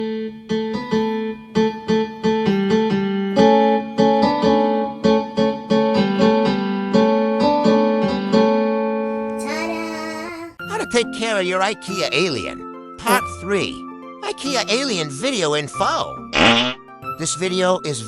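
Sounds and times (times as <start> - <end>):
piano melody over chords: 0.0 - 9.3.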